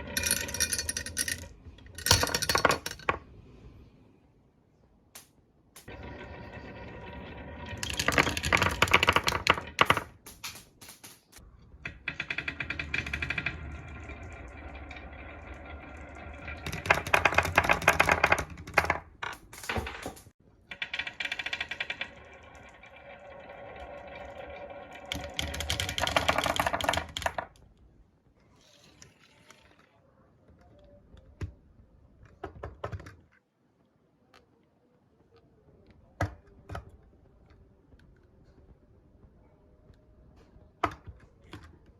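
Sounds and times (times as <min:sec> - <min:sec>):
marbles clattering on track: 0:00.0 - 0:03.2, 0:05.8 - 0:27.6
marbles rolling down wooden run: 0:00.0 - 0:03.2, 0:05.8 - 0:27.6.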